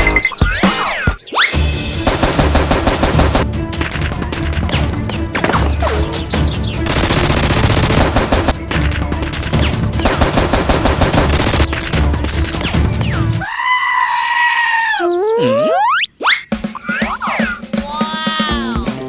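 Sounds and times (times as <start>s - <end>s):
background music: 0.0s - 13.5s, 16.5s - 19.0s
rapid gunfire sound effects: 2.0s - 4.0s, 6.8s - 8.8s, 9.4s - 12.1s.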